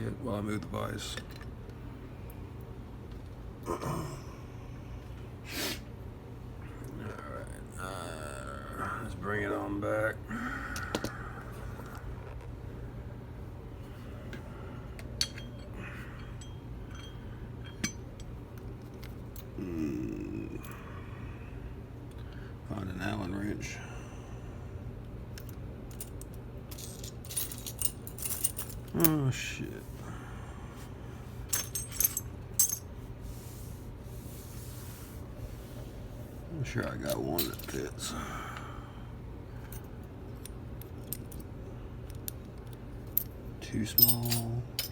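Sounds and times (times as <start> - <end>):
low steady hum: 0.0 - 44.9
metal clinks of lock picking: 15.2 - 18.3, 25.4 - 29.0, 44.0 - 44.9.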